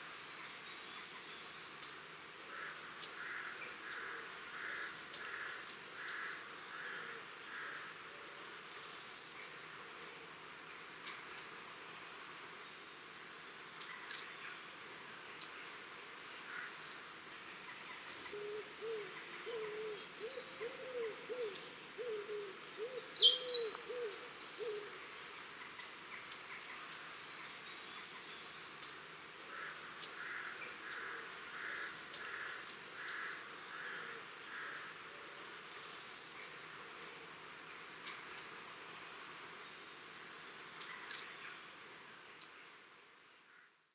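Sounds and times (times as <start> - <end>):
lower repeated cooing call: 18.3 - 25.0
birds giving high thin calls: 22.2 - 25.0
sharp bird call: 23.2 - 23.9.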